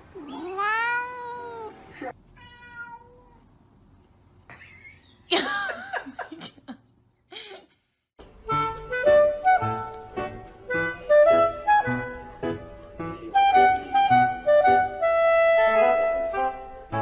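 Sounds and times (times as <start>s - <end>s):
cats meowing: 0.1s - 3.5s.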